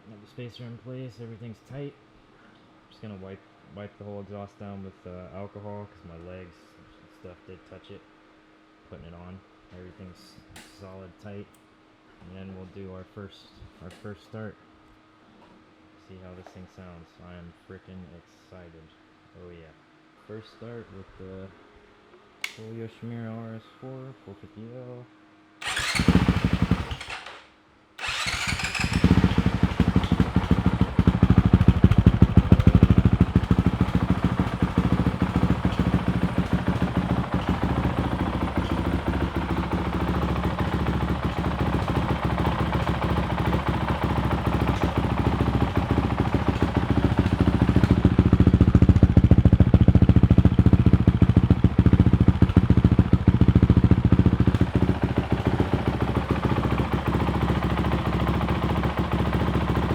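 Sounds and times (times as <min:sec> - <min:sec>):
motorcycle engine starting and running: 0:25.6 - 0:27.4, 0:28.0 - 0:59.9.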